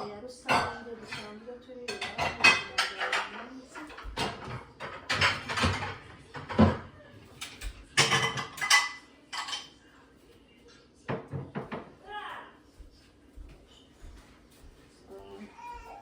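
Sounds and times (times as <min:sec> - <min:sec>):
plates clattering in dishwasher rack: 0:00.0 - 0:09.8.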